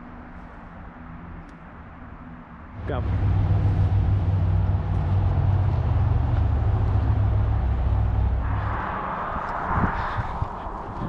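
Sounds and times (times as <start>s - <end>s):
traffic engine rumble: 2.7s - 11.0s
passing vehicle hiss: 2.8s - 11.0s.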